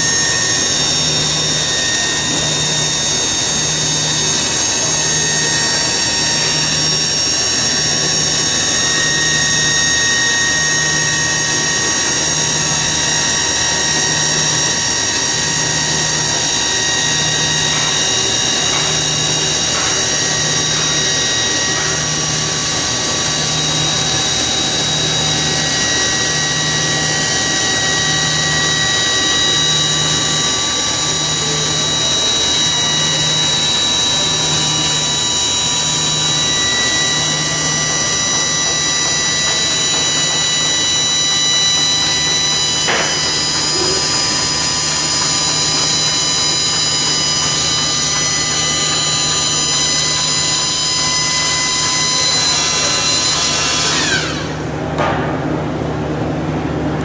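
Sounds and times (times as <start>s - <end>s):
motor high whine: 0.0s - 57.0s.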